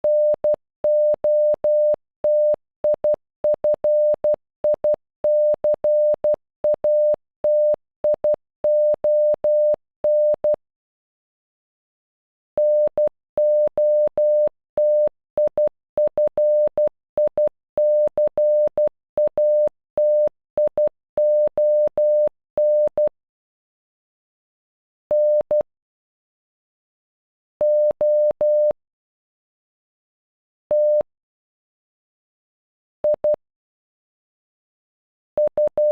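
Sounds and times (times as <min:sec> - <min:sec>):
morse code beeps: 0:00.0 - 0:10.6, 0:12.6 - 0:23.1, 0:35.4 - 0:35.9.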